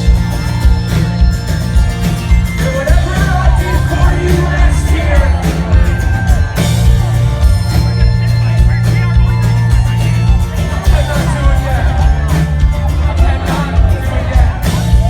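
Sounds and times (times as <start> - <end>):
bass guitar: 0.0 - 15.0
drums: 0.0 - 15.0
voices singing: 2.5 - 7.7, 10.3 - 15.0.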